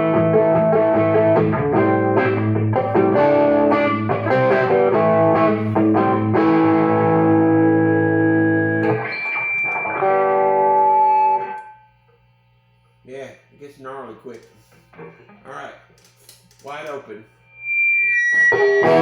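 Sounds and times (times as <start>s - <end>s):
distorted electric guitar chords: 0.0s - 12.8s, 17.5s - 19.0s
faint low amp hum: 0.0s - 17.7s.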